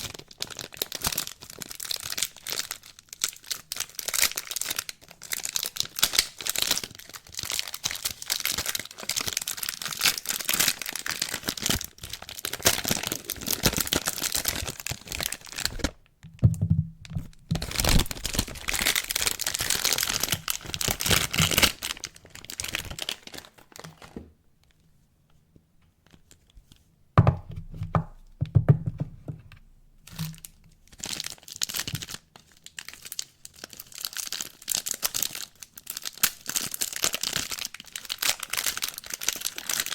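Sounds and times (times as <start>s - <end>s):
soap wrapping crinkling and tearing: 0.0s - 24.8s, 30.0s - 39.9s.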